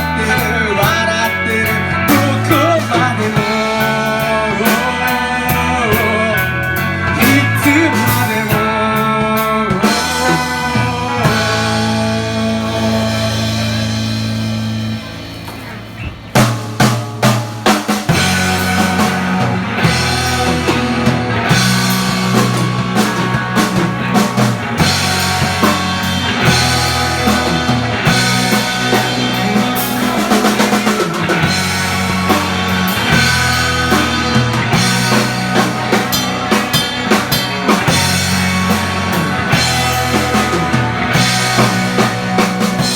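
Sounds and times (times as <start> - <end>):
drum kit: 0.0 - 42.9
rock band playing: 0.0 - 42.9
sustained bass notes: 0.0 - 42.9.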